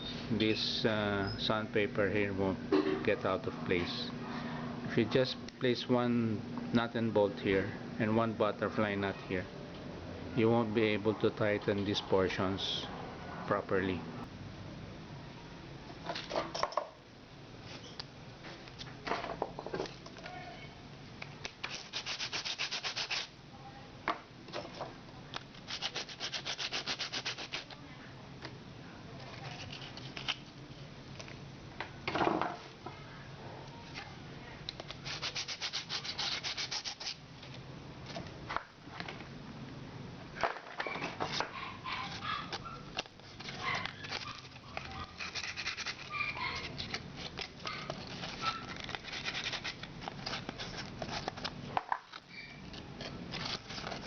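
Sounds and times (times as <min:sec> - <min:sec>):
sandpaper rubbing on block: 0:21.7 - 0:23.3, 0:25.7 - 0:27.6, 0:35.0 - 0:37.2, 0:45.0 - 0:47.0, 0:48.3 - 0:50.8.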